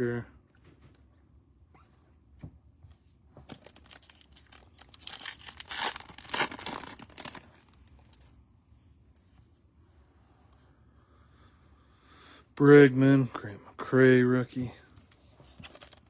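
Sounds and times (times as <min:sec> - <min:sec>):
foil wrapper tearing and crinkling: 0:03.5 - 0:08.2.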